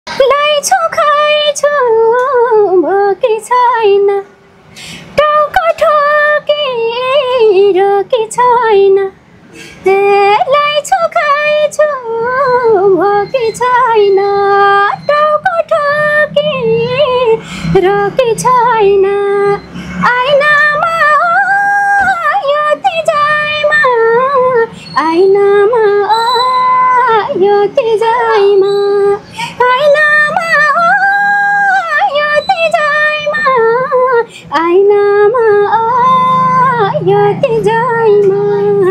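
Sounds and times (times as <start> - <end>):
woman singing: 0.1 - 4.3, 5.1 - 9.2, 9.8 - 38.9
short breaths: 4.6 - 5.2, 9.4 - 9.9, 17.4 - 17.8, 19.7 - 20.0, 24.7 - 25.0, 29.2 - 29.6, 34.3 - 34.5.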